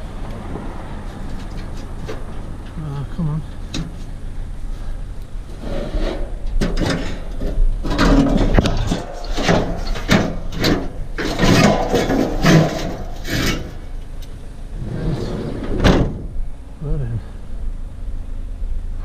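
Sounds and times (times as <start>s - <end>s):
scrap metal clattering: 4.8s - 14.0s.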